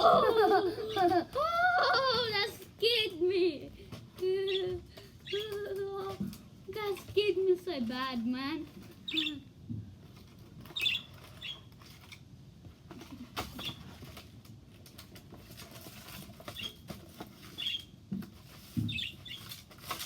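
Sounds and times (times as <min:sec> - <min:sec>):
light scratching and tapping: 0:00.0 - 0:20.0
parrots chirping: 0:05.2 - 0:05.5, 0:09.0 - 0:09.4, 0:10.7 - 0:11.7.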